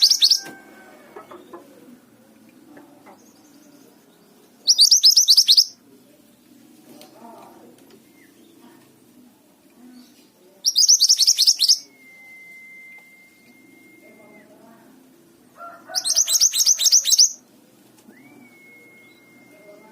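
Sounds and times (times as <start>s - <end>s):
songbird singing: 0.0s - 19.9s
faint low murmur: 0.5s - 4.9s, 5.7s - 10.9s, 11.6s - 16.4s, 17.3s - 19.9s
long high whistle: 11.8s - 14.4s, 18.2s - 19.9s.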